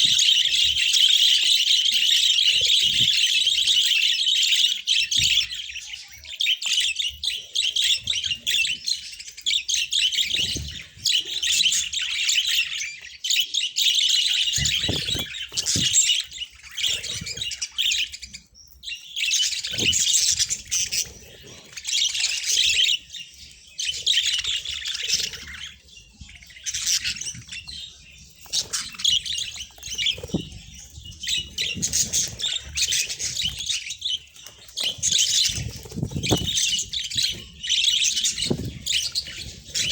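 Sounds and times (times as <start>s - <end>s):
budgerigars chattering and warbling: 0.0s - 39.9s
low thumps: 38.3s - 39.4s.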